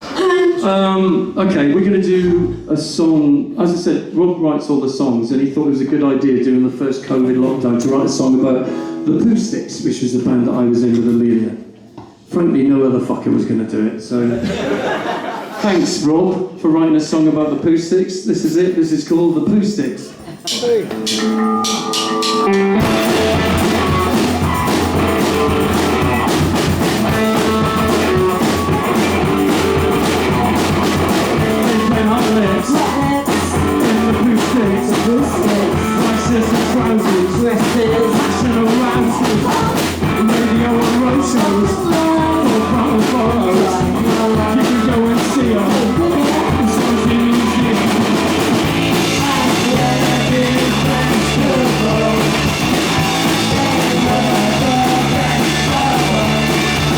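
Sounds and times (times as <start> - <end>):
drums: 0.0 - 2.7, 18.3 - 56.9
electric guitar: 20.3 - 56.9
bass guitar: 20.4 - 56.9
person singing: 20.5 - 56.9.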